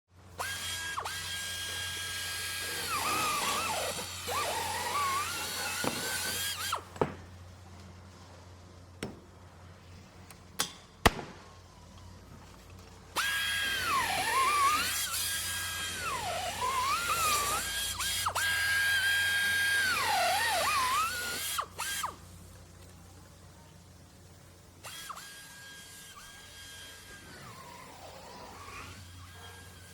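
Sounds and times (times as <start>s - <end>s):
power drill whining: 0.4s - 6.9s, 13.2s - 22.2s, 24.8s - 29.9s.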